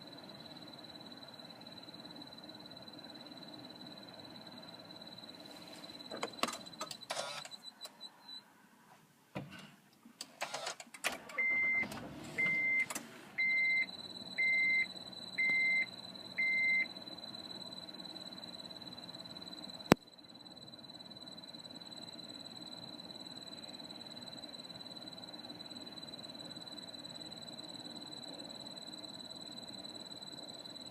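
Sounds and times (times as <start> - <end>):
steady high-pitched whine: 0.0 - 8.6, 12.0 - 30.9
car warning chime beeping: 11.4 - 17.5.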